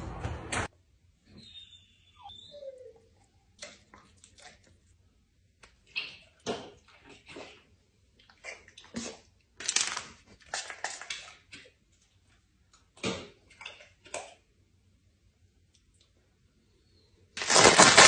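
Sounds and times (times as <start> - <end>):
water splashing in a bathtub: 5.6 - 14.5.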